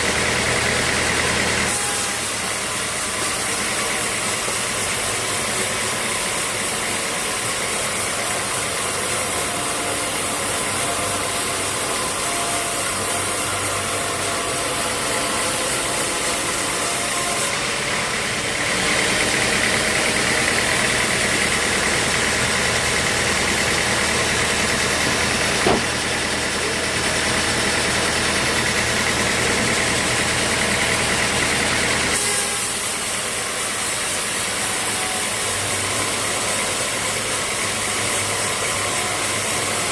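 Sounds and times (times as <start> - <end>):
saw blade cutting log: 0.0 - 39.9
sawmill machinery running: 0.0 - 39.9
sharp knock: 25.0 - 26.0.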